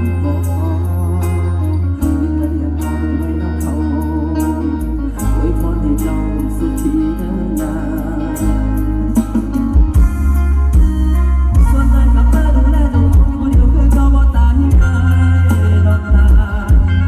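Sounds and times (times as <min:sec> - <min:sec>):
wavering keyboard or vocal melody: 0:00.0 - 0:10.1, 0:10.8 - 0:17.0
heavy sustained bass notes: 0:00.0 - 0:17.0
steady beat: 0:09.1 - 0:17.0.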